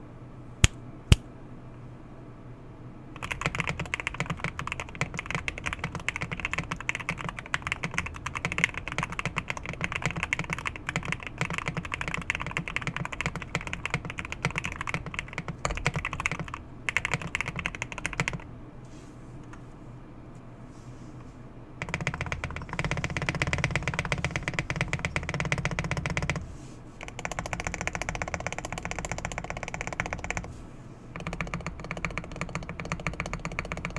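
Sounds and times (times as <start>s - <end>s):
mechanical keyboard typing: 3.2s - 18.4s, 21.8s - 26.4s, 27.0s - 30.5s, 31.2s - 33.9s.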